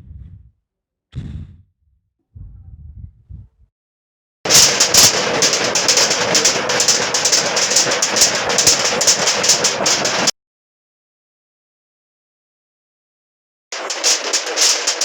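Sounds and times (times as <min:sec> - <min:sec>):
rattling clatter of household items: 0:04.5 - 0:10.3, 0:13.8 - 0:15.0.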